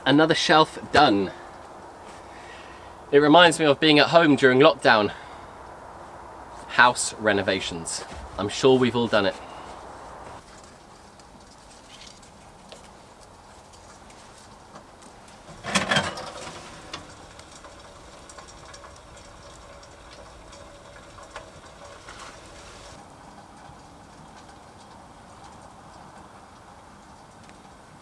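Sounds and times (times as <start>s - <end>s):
faint handling noise: 6.5s - 17.2s
wooden knocks clattering: 15.5s - 18.9s.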